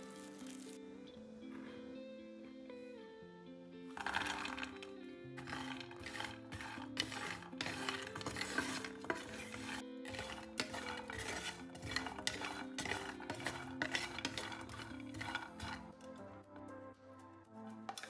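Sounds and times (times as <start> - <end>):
music with held notes: 0.0 - 18.0
utensils clicking and clinking: 4.0 - 16.2.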